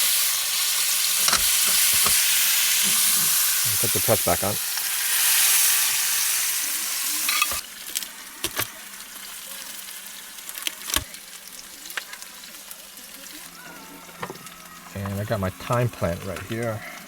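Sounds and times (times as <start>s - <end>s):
steak sizzling in pan: 0.0s - 17.0s.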